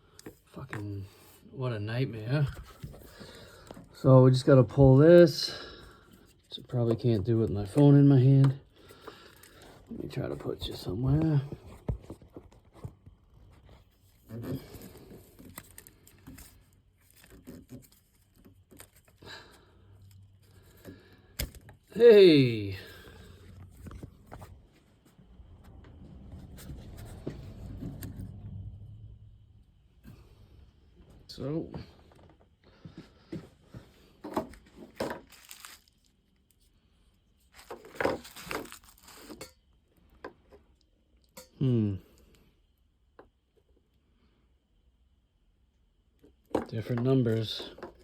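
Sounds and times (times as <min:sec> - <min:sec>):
faint low hum: 0:00.1 - 0:47.8
crinkling and tearing: 0:14.1 - 0:19.2, 0:34.7 - 0:36.5, 0:37.5 - 0:39.6
hands handling parts and tools: 0:34.2 - 0:36.1, 0:37.4 - 0:39.6.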